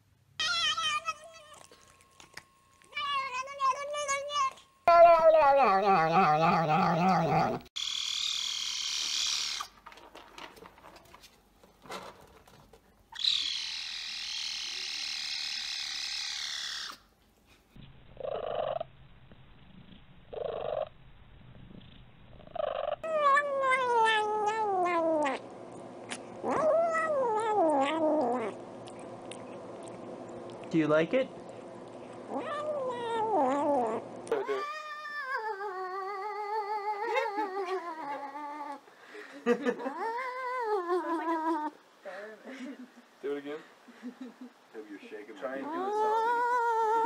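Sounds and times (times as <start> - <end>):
cats meowing and yowling: 0.4 - 1.8, 2.8 - 9.7, 23.0 - 25.4, 26.5 - 28.6, 32.3 - 38.8, 45.6 - 47.0.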